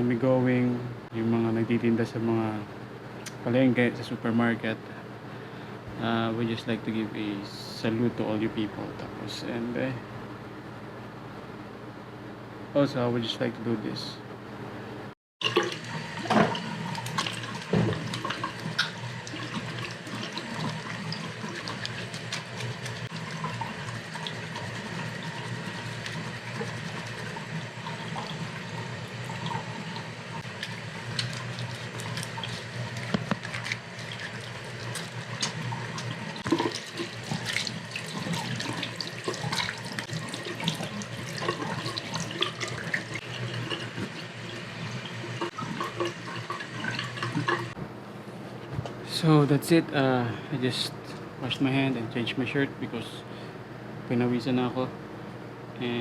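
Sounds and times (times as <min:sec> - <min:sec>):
hands washing with splashing: 0:15.4 - 0:47.8
tap water running into sink: 0:15.4 - 0:47.8.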